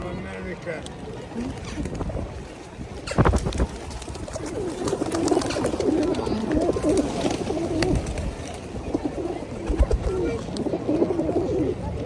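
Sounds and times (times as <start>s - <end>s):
pigeons cooing: 4.3s - 12.0s.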